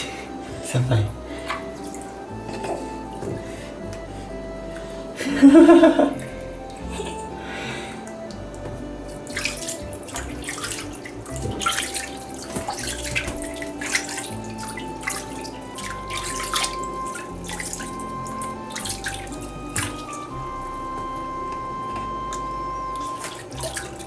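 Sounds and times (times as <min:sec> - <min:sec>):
soft background music: 0:00.0 - 0:24.0
water splashing and pouring: 0:07.9 - 0:20.4, 0:22.4 - 0:24.0.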